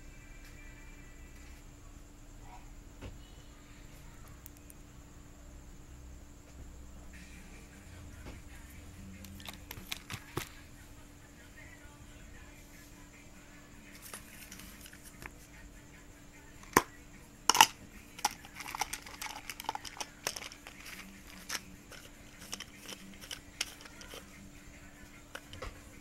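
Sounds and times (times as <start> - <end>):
small irregular clicks and crinkling: 4.2 - 4.8, 9.2 - 10.6, 17.5 - 24.4, 25.3 - 25.8.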